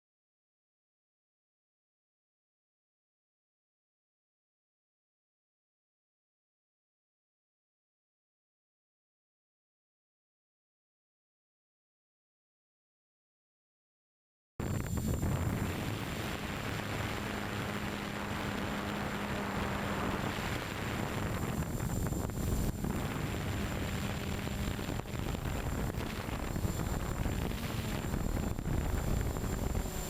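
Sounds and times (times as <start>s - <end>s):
drone rotors drone: 14.6s - 30.0s
even hum: 14.6s - 30.0s
wind buffeting microphone: 14.6s - 30.0s.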